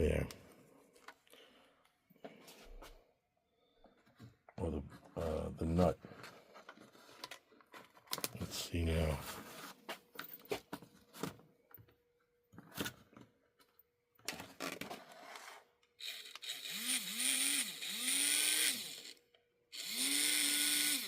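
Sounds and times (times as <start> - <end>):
small electric motor whine: 16.0 - 21.0.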